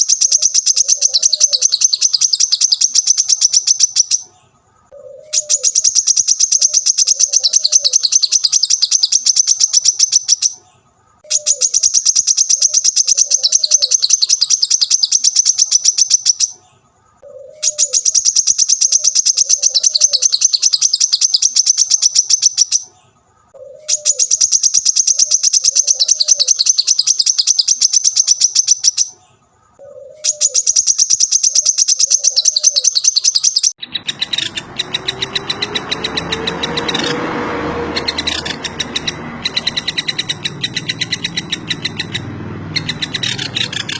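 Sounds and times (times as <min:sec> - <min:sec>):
low bird coos: 0:00.0 - 0:02.2, 0:04.4 - 0:05.8, 0:06.6 - 0:08.1, 0:11.2 - 0:11.8, 0:12.6 - 0:14.0, 0:16.6 - 0:18.0, 0:18.9 - 0:20.4, 0:22.9 - 0:24.4, 0:25.1 - 0:26.7, 0:29.2 - 0:30.8, 0:31.5 - 0:33.1, 0:33.9 - 0:43.9
bird rapid high chirping: 0:00.0 - 0:43.9.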